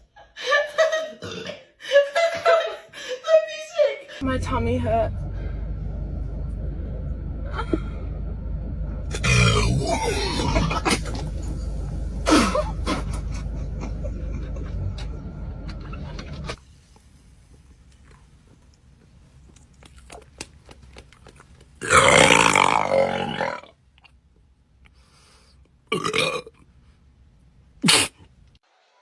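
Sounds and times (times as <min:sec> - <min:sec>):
steady low rumble: 0:04.2 - 0:16.6
loud human burp: 0:21.8 - 0:23.7, 0:25.9 - 0:26.5.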